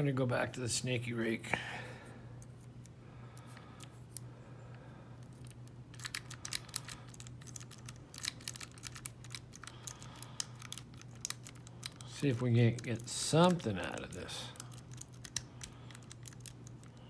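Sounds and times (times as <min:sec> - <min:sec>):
lock pins clicking: 0:05.3 - 0:17.0.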